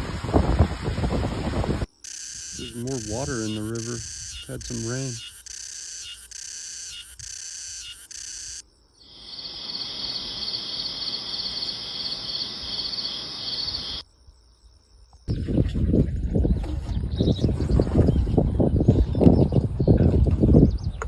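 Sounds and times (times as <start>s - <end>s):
insects trilling: 1.9s - 15.4s.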